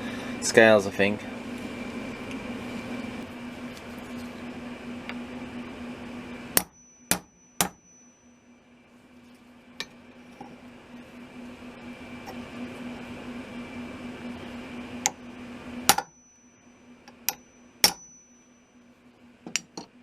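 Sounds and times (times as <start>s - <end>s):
hammer striking metal: 6.6s - 8.2s, 15.9s - 16.2s, 17.3s - 18.5s.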